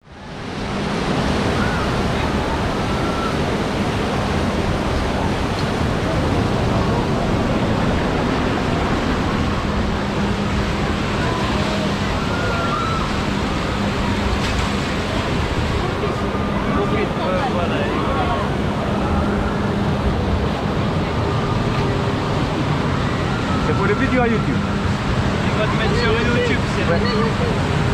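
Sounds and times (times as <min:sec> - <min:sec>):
churning water rushing: 0:00.0 - 0:27.9.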